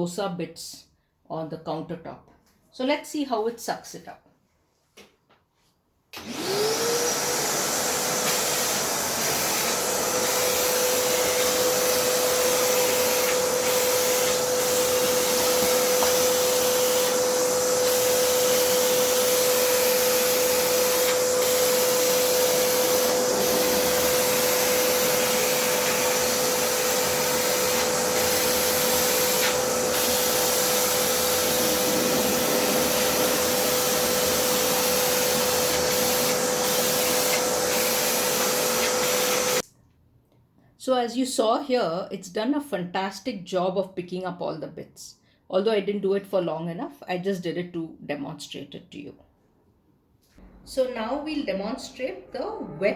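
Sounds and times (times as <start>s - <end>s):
vacuum cleaner motor whining: 6.2s - 39.6s
vacuum sucking up crumbs: 6.2s - 39.6s.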